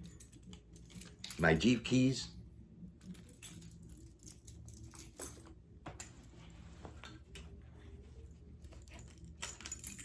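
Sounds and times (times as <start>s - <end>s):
keys clicking and knocking: 0.0s - 1.7s, 3.0s - 6.1s, 8.7s - 10.0s.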